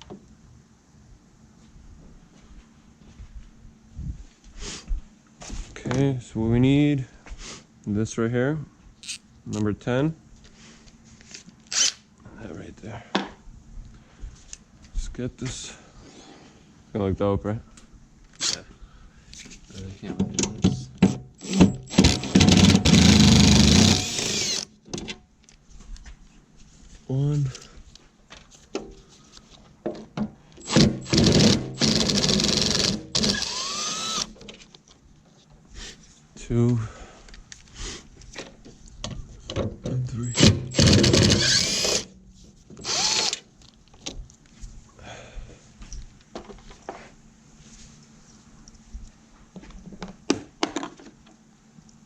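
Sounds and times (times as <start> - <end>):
power drill running: 21.4 - 24.7, 30.6 - 34.4, 40.2 - 42.1, 42.8 - 43.4.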